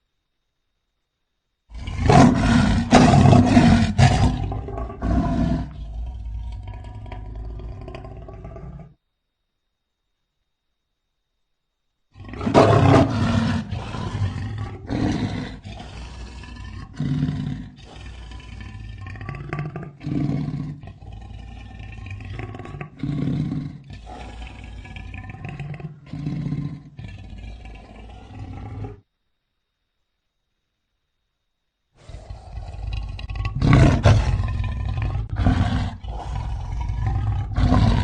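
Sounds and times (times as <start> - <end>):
lion roaring: 1.7 - 9.0, 12.2 - 29.0, 32.0 - 38.0.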